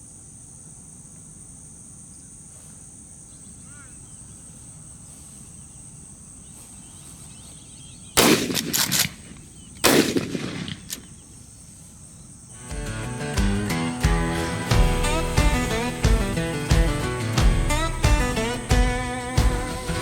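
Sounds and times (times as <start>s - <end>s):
high-pitched insect chorus: 0.0s - 20.0s
shotgun shots with echo: 8.2s - 11.2s.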